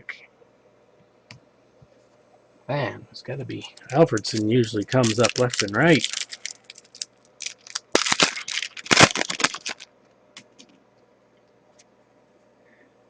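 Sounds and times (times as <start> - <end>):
cards and foil pack rustling: 3.6 - 9.9.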